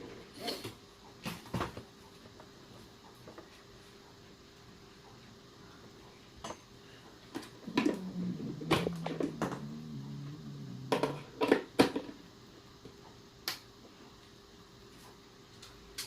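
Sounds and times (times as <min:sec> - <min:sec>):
low wavering hum: 0:07.6 - 0:11.5.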